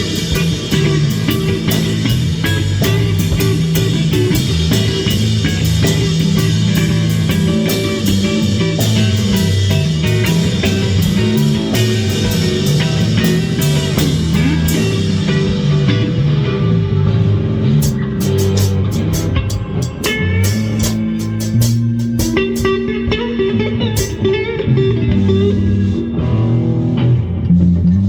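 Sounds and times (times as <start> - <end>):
psychedelic rock jam: 0.0 - 28.0
bright cymbal hits: 17.8 - 22.8.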